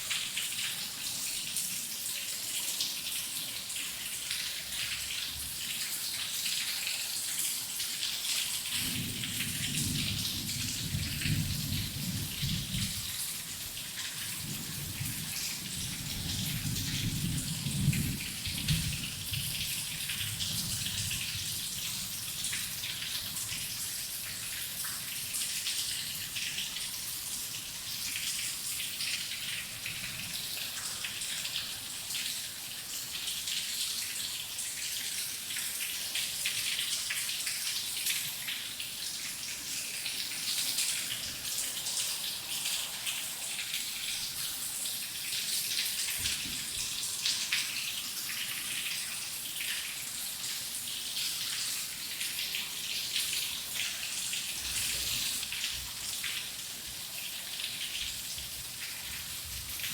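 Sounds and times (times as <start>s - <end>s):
heavy rain: 7.2s - 59.9s
low thunder rumble: 8.8s - 13.2s.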